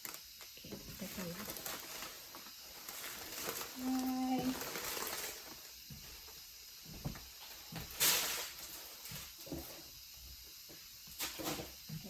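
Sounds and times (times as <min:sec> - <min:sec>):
packaging rustling: 0:00.0 - 0:05.7.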